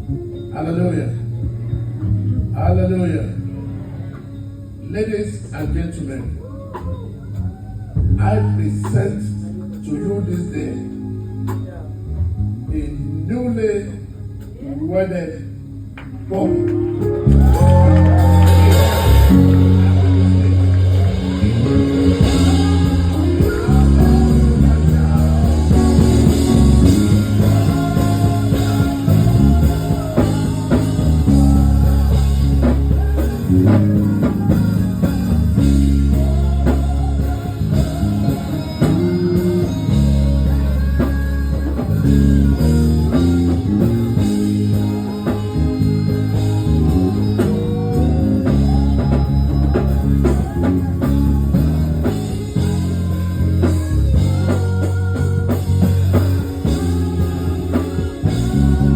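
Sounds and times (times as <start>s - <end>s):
bass guitar: 0.0s - 58.9s
electric guitar: 15.4s - 58.9s
drum kit beat: 16.5s - 58.9s.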